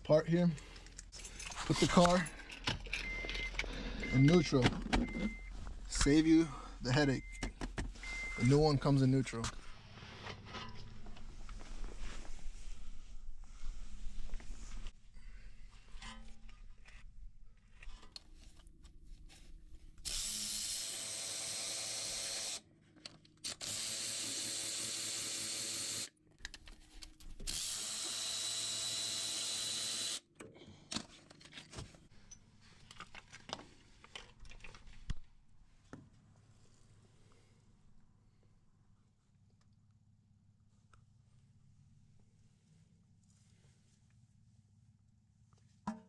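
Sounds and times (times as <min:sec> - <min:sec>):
power tool running: 0:20.0 - 0:22.6, 0:23.4 - 0:26.1, 0:27.5 - 0:30.2.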